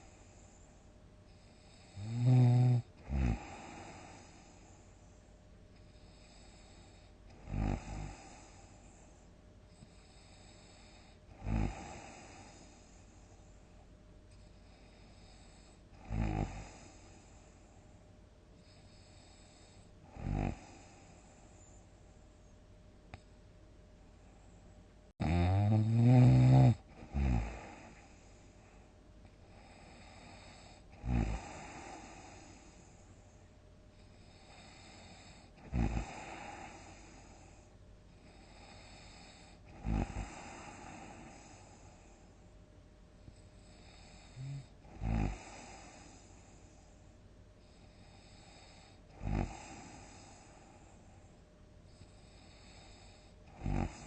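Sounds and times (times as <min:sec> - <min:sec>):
quiet breathing: 0:00.0 - 0:25.2, 0:25.8 - 0:54.0
person snoring loudly: 0:01.8 - 0:04.2, 0:07.4 - 0:08.5, 0:10.4 - 0:12.6, 0:16.0 - 0:17.0, 0:20.1 - 0:21.0, 0:25.2 - 0:28.0, 0:29.9 - 0:32.4, 0:34.4 - 0:37.1, 0:38.5 - 0:41.5, 0:43.8 - 0:46.0, 0:48.2 - 0:50.2, 0:52.2 - 0:54.0.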